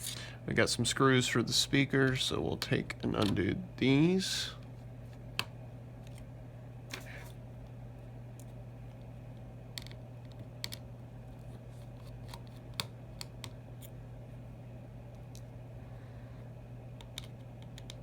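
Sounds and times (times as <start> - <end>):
low hum: 0.0 - 18.0
screwdriver clicks and taps: 9.8 - 10.8, 17.0 - 18.0.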